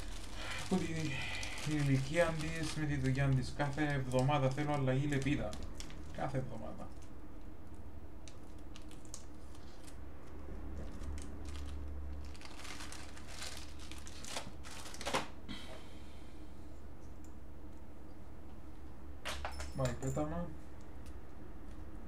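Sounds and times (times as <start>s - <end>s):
wrapper crinkling and tearing: 0.0s - 7.1s, 8.2s - 15.4s
low electrical hum: 0.0s - 22.0s.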